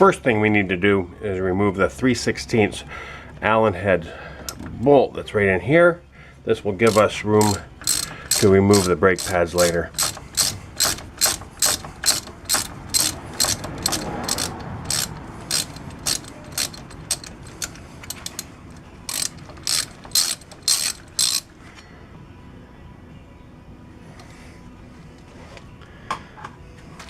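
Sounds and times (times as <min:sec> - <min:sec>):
ratchet wrench clicking: 0:06.8 - 0:21.5.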